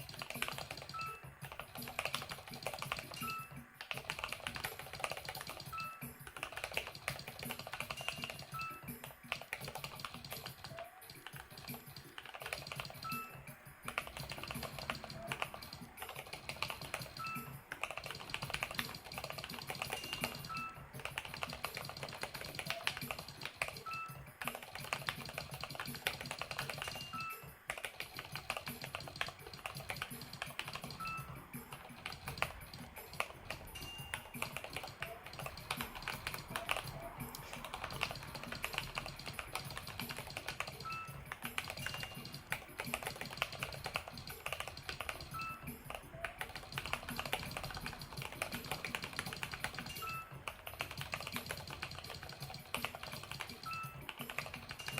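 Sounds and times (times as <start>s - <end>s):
background music: 0.0s - 54.9s
mechanical keyboard typing: 0.0s - 54.9s.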